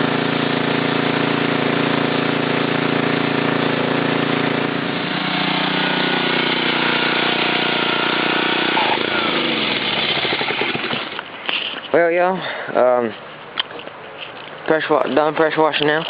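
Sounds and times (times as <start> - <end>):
pressure washer engine running: 0.0 - 11.6.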